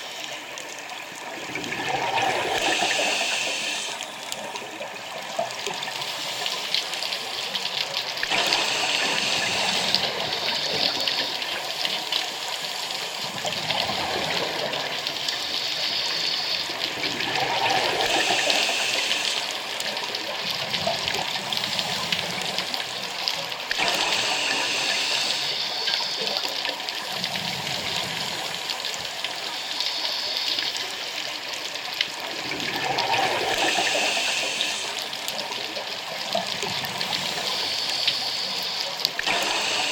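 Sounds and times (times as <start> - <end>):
exhaled bubbles: 0.9 - 31.1, 31.7 - 39.9
diver breathing through regulator: 2.2 - 4.3, 8.2 - 10.7, 17.4 - 19.6, 23.7 - 26.5, 32.8 - 35.3.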